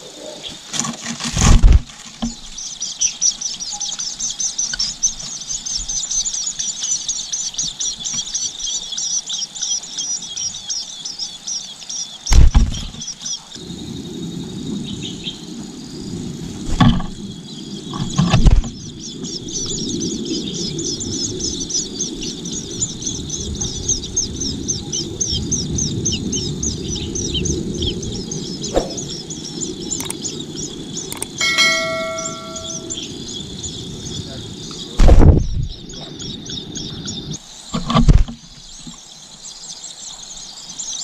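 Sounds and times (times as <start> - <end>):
nestling birds chirping: 0.0 - 41.0
loud thumps: 12.3 - 13.0
steady low rumble: 13.6 - 37.4.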